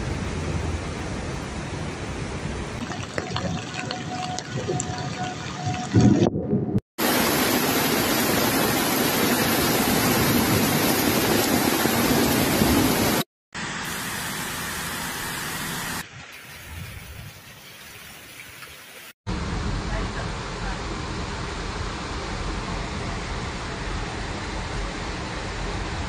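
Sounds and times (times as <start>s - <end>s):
floodwater rushing: 2.8s - 13.3s.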